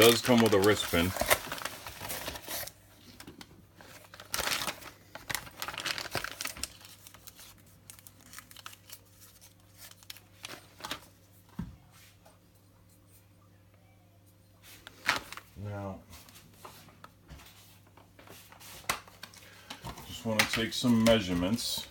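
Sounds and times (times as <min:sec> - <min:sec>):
packaging crinkling and rustling: 0:00.0 - 0:11.1, 0:14.8 - 0:15.5, 0:17.4 - 0:21.9.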